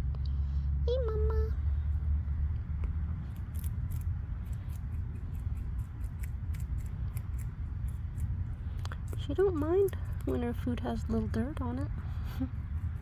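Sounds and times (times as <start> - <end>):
low steady rumble: 0.0 - 13.0
rabbit crunching lettuce: 1.7 - 13.0.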